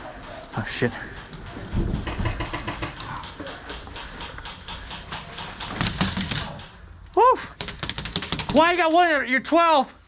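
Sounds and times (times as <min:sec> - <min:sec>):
airsoft guns firing: 0:01.8 - 0:06.7.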